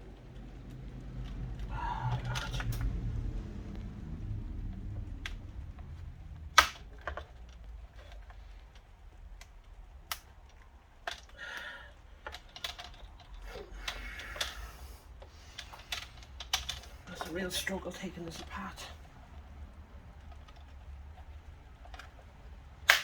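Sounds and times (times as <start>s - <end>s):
plastic snapping: 6.4s - 8.3s, 22.8s - 23.0s.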